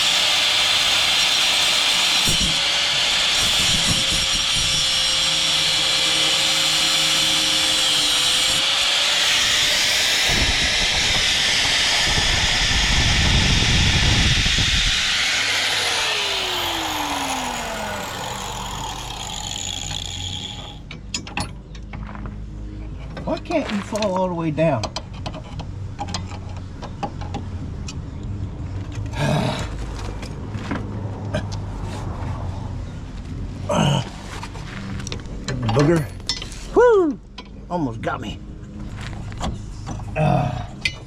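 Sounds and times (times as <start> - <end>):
angle grinder cutting steel: 0.0 - 20.9.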